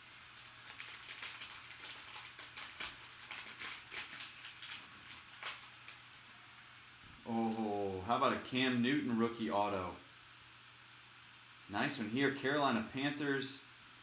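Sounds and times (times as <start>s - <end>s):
card pack crackling: 0.0s - 6.3s
wrapper rustling: 0.0s - 6.7s
cards shifting: 0.2s - 6.2s.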